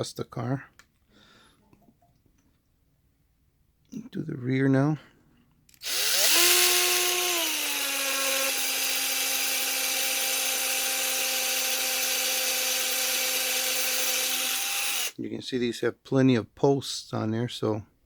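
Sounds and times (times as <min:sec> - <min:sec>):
electric drill whining: 0:05.8 - 0:15.2.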